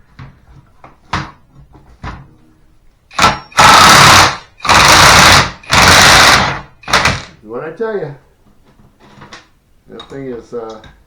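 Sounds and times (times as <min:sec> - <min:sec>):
impact wrench hammering: 0:03.1 - 0:07.4.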